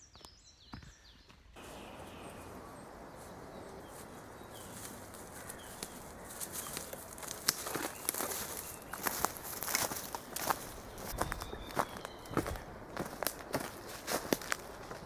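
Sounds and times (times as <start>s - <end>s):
footsteps crunching on track: 0.7s - 15.0s
steady rushing hiss: 1.6s - 9.3s
bird singing whistled phrases: 11.0s - 12.5s.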